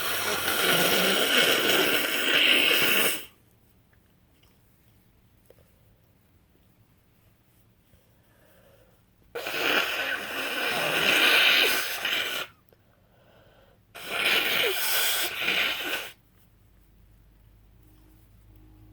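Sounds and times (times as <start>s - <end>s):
woman blowing nose into tissue: 0.0s - 3.4s, 9.4s - 12.6s, 14.0s - 16.2s.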